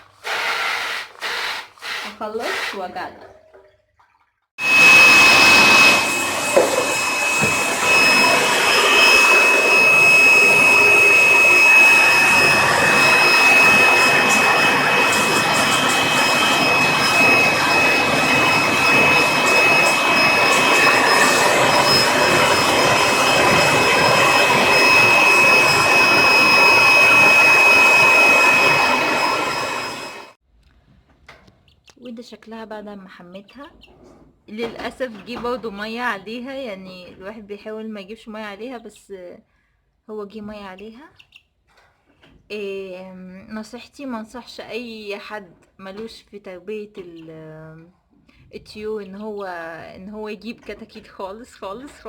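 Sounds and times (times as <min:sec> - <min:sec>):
fan motor whining: 0:04.6 - 0:30.4.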